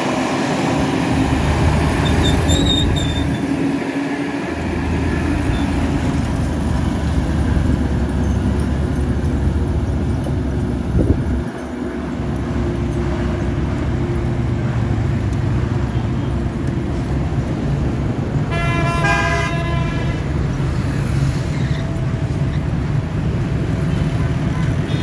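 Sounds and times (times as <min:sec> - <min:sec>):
road traffic: 0:00.0 - 0:25.0
car horn: 0:18.5 - 0:20.2, 0:24.6 - 0:25.0.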